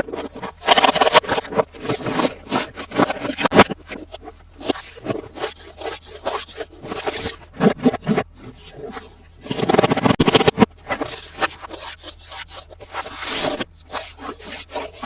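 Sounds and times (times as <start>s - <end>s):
hands rubbing and scraping toy: 0.0s - 15.0s.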